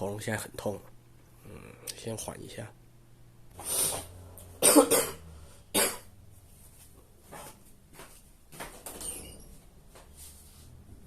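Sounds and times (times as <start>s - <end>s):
person coughing hard: 4.6s - 6.1s.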